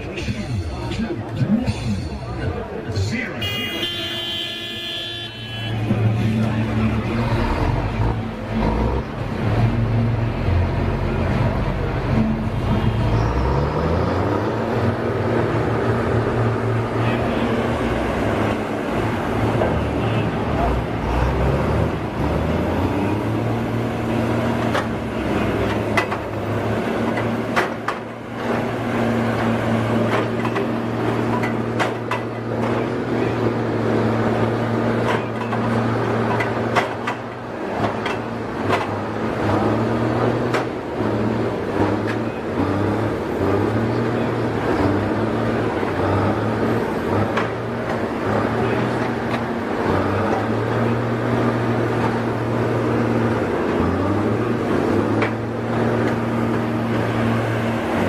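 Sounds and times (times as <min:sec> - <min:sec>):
engine humming: 0:00.0 - 0:58.0.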